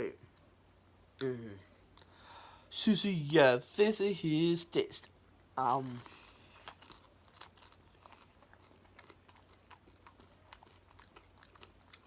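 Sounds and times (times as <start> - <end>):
crunching and chewing: 5.0 - 12.0.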